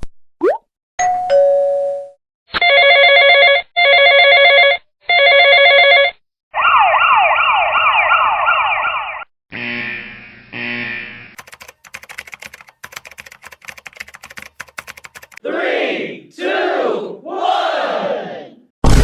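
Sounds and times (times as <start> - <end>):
siren-like sweep: 6.6 - 9.3.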